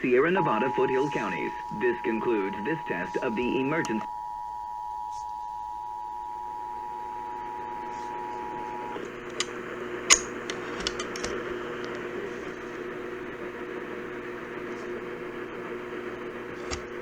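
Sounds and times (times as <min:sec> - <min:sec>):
steady two-note tone: 0:00.0 - 0:09.0
low hum: 0:00.0 - 0:14.5
radio hiss: 0:00.0 - 0:17.0
sharp clicks: 0:09.0 - 0:12.0.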